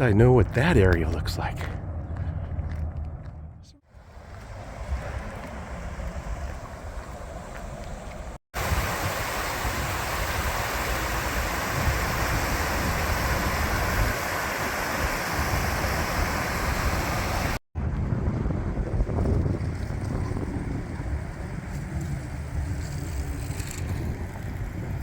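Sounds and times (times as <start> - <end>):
distant traffic rumble: 0.0 - 17.6
wind: 0.0 - 25.0.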